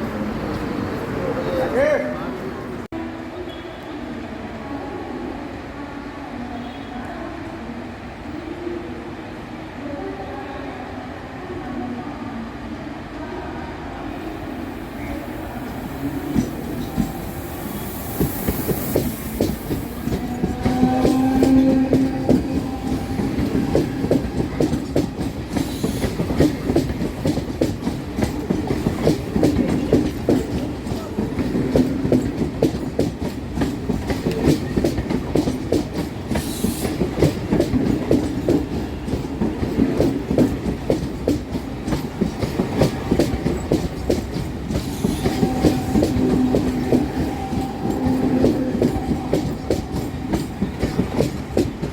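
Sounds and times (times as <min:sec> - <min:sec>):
train wheels clattering on rails: 0:14.2 - 0:51.9.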